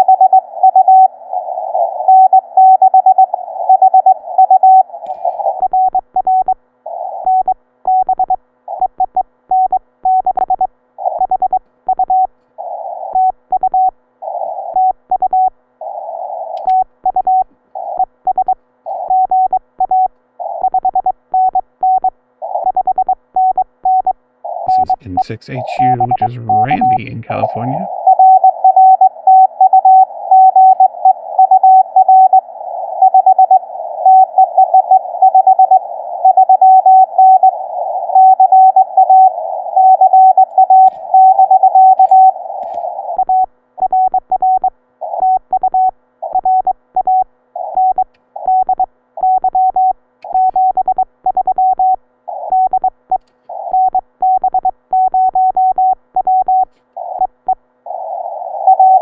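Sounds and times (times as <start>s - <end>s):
receiver hiss: 24.4s - 28.0s, 36.9s - 43.3s
morse code tone: 24.7s - 32.4s, 38.2s - 52.9s, 58.7s - 59.0s.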